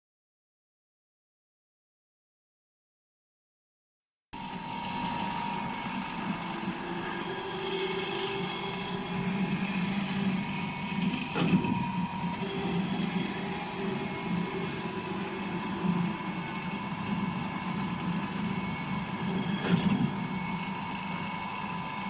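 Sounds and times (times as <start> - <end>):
machine hum: 4.4 - 22.0.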